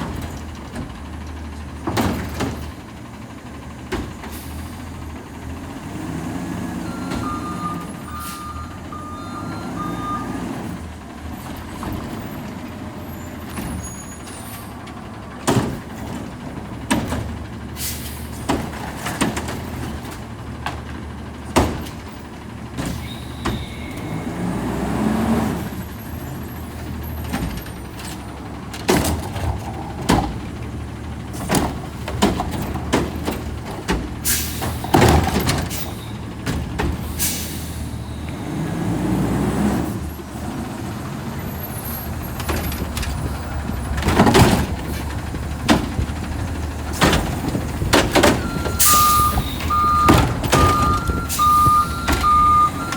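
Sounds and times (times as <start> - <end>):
metal clanks and bangs: 0.0 - 3.1, 11.2 - 23.8, 26.2 - 37.8, 41.6 - 52.9
truck engine running: 0.0 - 52.9
reversing alarm beeping: 6.8 - 10.4, 48.2 - 52.9
air brake hiss: 17.8 - 18.4, 34.2 - 34.8, 37.1 - 38.0.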